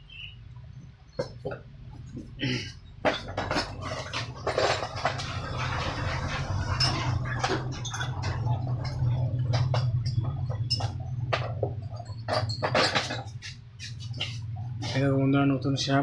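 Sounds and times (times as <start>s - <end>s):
light metal clicks and knocks: 3.1s - 13.5s.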